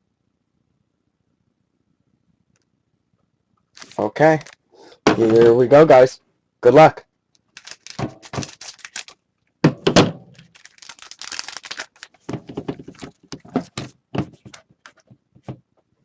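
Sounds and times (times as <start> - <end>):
packaging clicking and crinkling: 3.8 - 4.6, 7.4 - 9.6, 10.2 - 15.1
loud thump: 9.6 - 10.3.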